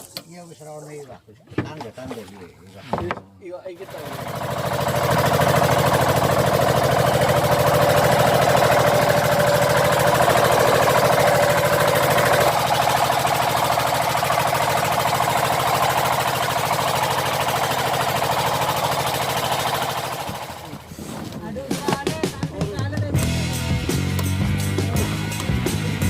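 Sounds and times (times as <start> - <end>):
boat engine knocking: 3.8 - 20.9.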